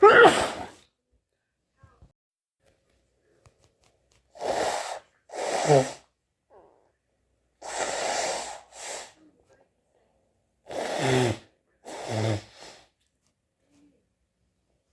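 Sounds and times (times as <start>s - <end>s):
person sneezing: 0.0s - 0.8s, 4.4s - 6.0s.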